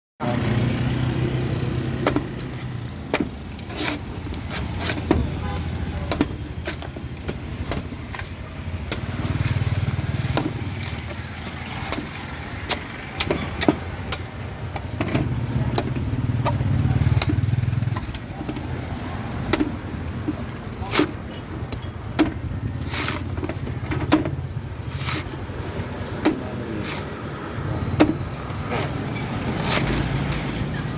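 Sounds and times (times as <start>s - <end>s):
knife striking coconut husk: 2.0s - 5.4s, 7.6s - 10.9s.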